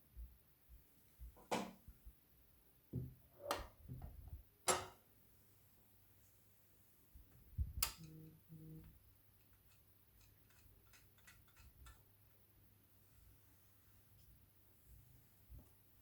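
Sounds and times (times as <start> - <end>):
faint ratchet-like clicks: 9.4 - 12.4.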